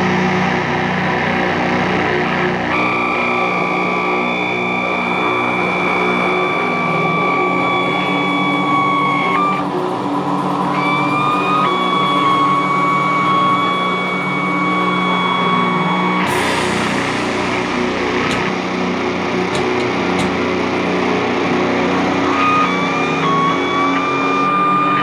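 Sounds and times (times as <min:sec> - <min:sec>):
distorted electric guitars droning: 0:00.0 - 0:25.0
high-pitched guitar feedback: 0:02.6 - 0:20.7.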